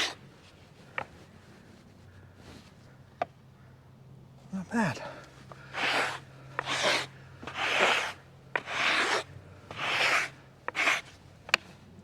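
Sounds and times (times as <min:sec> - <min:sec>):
brush rubbing across wood: 0:05.8 - 0:11.1.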